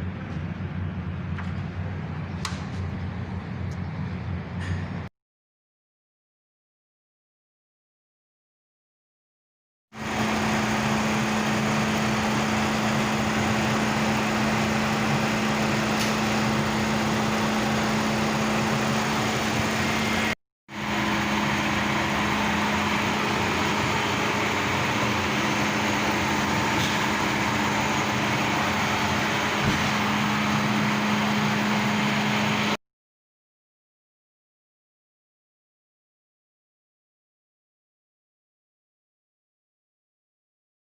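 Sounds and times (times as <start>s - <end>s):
car engine running: 10.0s - 32.8s.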